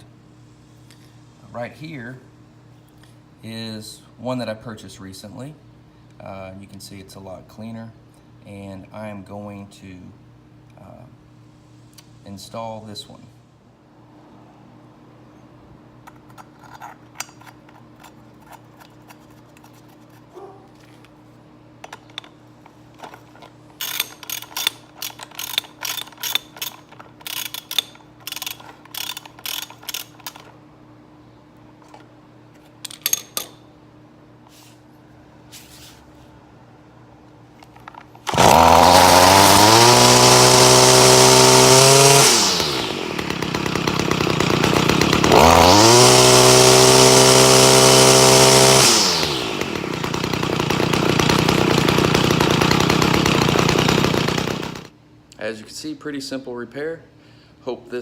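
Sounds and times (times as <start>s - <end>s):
metallic clicks and rattles: 21.8s - 30.6s
two-stroke engine revving: 38.3s - 54.9s.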